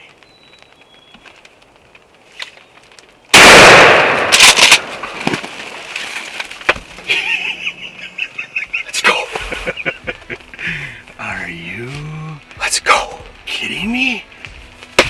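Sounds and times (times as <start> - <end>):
shotgun blast: 3.3 - 5.4.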